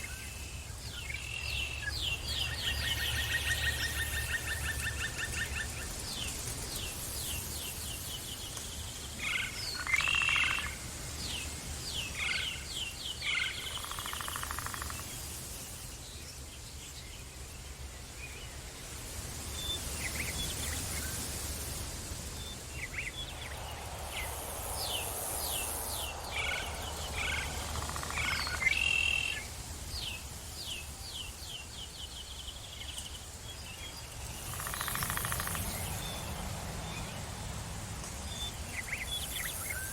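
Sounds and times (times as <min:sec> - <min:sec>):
birds chirping: 0:19.7 - 0:37.3
steady low rumble: 0:21.6 - 0:30.4.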